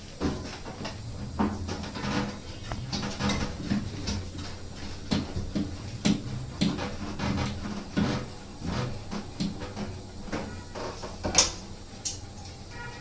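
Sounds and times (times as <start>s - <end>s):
steady low hum: 0.0s - 13.0s
knocks and clicks of hose fitting: 5.1s - 10.5s.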